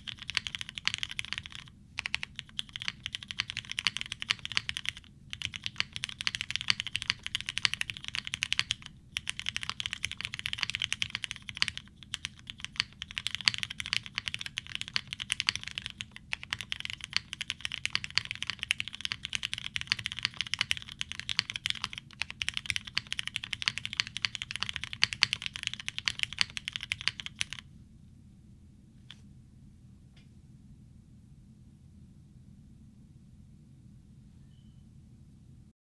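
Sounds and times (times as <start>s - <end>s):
fast mechanical keyboard typing: 0.0s - 27.7s.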